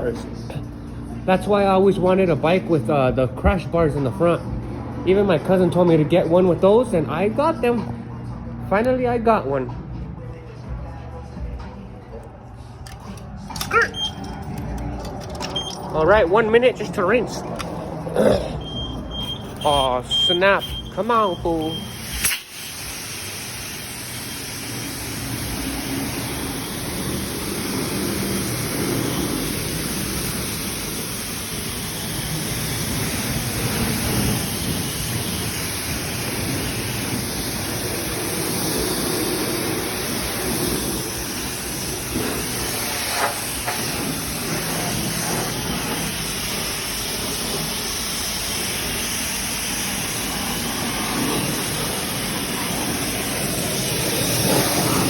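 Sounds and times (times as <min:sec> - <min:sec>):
pressure washer spraying: 0:18.6 - 0:55.0.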